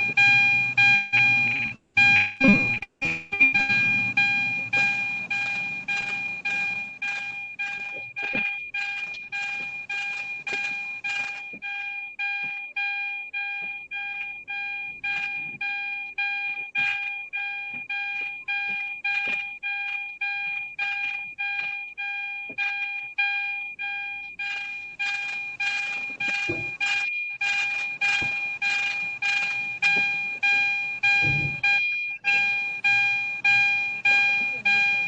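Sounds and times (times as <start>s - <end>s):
car electronic warning chime: 0.0s - 35.0s.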